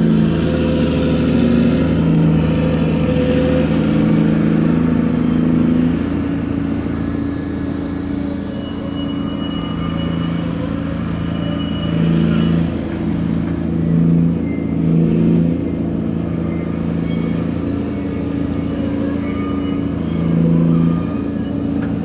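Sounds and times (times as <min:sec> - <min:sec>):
crane diesel engine droning: 0:00.0 - 0:22.0.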